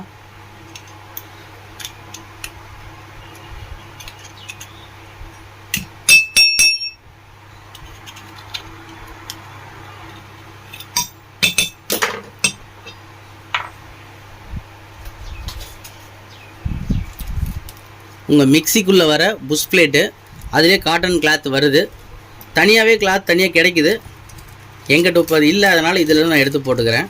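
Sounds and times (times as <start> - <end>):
bright ringing clinks: 6.1 - 7.0.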